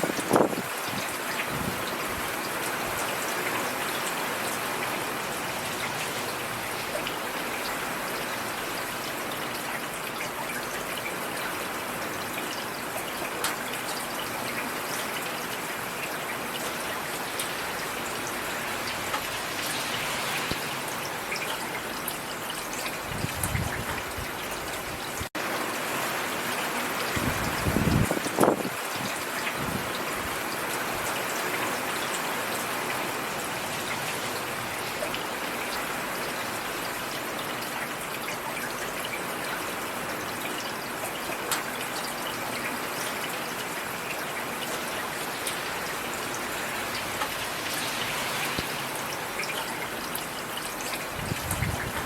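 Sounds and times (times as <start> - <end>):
steady rainfall: 0.0 - 52.0.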